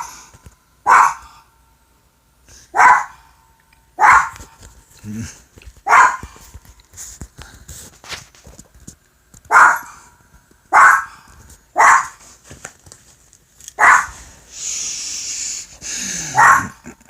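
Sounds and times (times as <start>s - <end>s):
dog barking: 0.8s - 1.4s, 2.7s - 3.2s, 4.0s - 4.4s, 5.8s - 6.4s, 9.5s - 10.0s, 10.7s - 11.2s, 11.8s - 12.2s, 13.8s - 14.2s, 16.2s - 16.8s
steady hiss: 4.3s - 17.0s.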